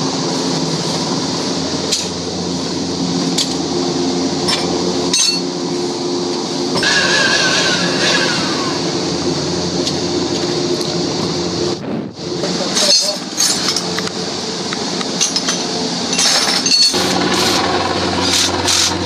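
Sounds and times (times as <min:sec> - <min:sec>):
high wavering whine: 0:00.0 - 0:19.0
core drill boring concrete: 0:06.4 - 0:11.6, 0:15.0 - 0:19.0.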